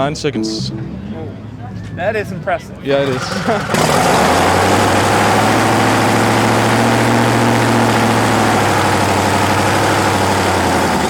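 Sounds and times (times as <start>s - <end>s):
dragster engine idling loudly: 3.0s - 11.0s.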